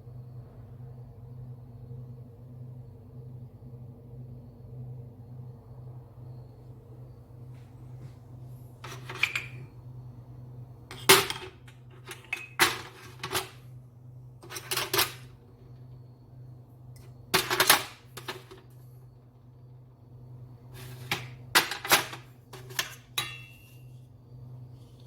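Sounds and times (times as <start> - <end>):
steady low hum: 0.0 - 25.0
hard objects clattering: 8.8 - 9.7, 10.9 - 13.6.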